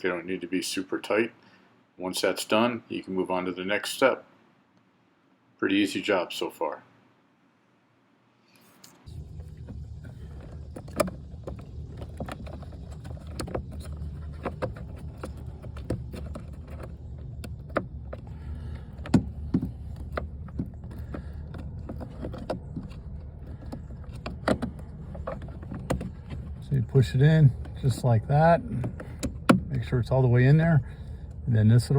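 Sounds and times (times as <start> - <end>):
steady low rumble: 9.1 - 31.9.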